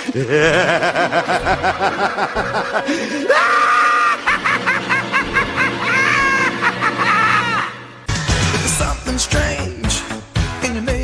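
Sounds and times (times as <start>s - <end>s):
high-pitched voice laughing: 0.0s - 7.9s.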